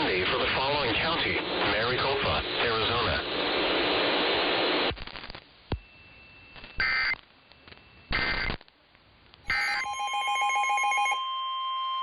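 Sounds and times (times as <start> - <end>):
pulsing electronic alert tone: 9.5 - 11.2.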